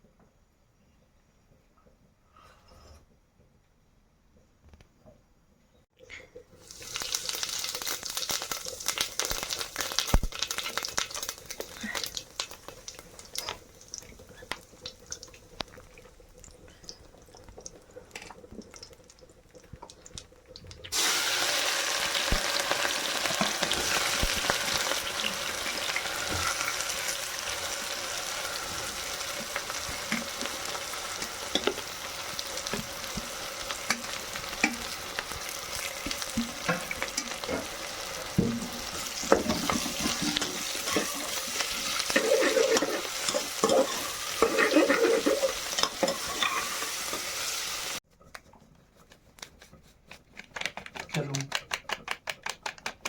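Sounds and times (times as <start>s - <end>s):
food sizzling in hot oil: 6.6s - 20.2s, 20.9s - 48.0s
cooking utensils clinking: 28.6s - 32.0s, 36.0s - 47.5s.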